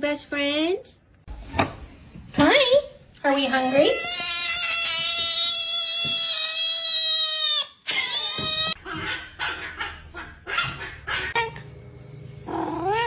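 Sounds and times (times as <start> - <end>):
dog yipping and barking: 4.8 - 11.6.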